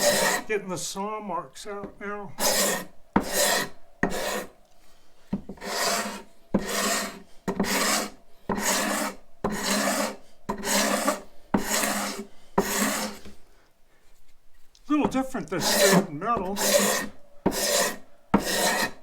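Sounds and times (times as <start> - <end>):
scraper drawn over wood: 5.6 - 13.4.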